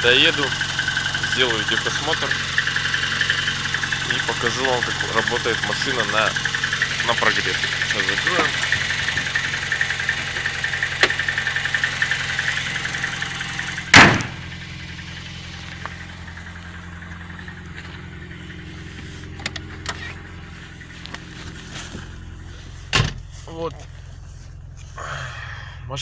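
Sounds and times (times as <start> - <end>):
car engine idling: 0.0 - 26.0
bonnet slamming shut: 13.9 - 14.4.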